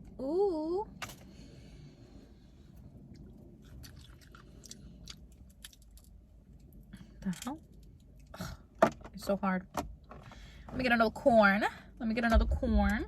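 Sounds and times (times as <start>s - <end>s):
low steady hum: 0.0s - 13.0s
person chewing food: 3.0s - 6.8s.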